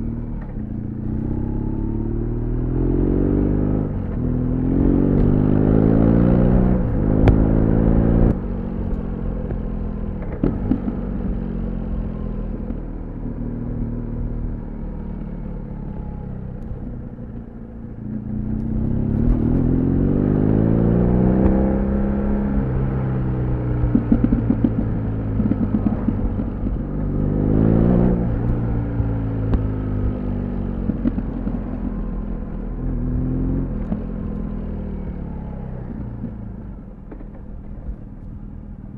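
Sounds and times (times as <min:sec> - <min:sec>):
motorcycle engine accelerating: 0:00.0 - 0:38.9
exhaust popping and crackling: 0:06.5 - 0:11.5, 0:18.0 - 0:19.8, 0:21.2 - 0:34.7, 0:35.8 - 0:38.9.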